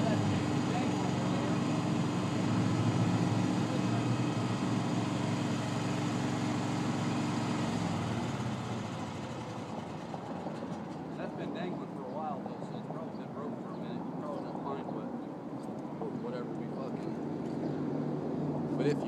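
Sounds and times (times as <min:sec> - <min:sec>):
lawn mower engine running: 0:00.0 - 0:11.4.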